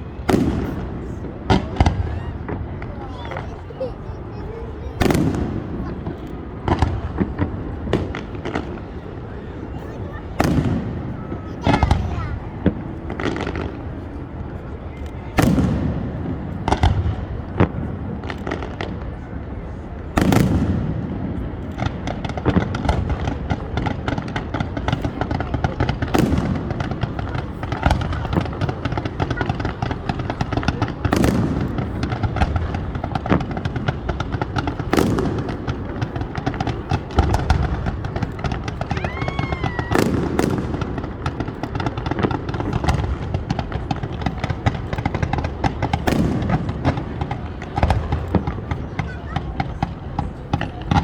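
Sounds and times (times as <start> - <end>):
firework bangs: 0.0 - 51.0
fireworks crackling and popping: 0.0 - 51.0.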